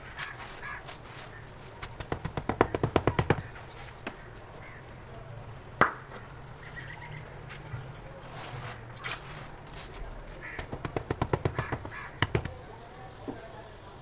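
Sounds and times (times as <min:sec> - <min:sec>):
rapid tapping on cement block: 0:01.8 - 0:03.6, 0:10.5 - 0:12.7.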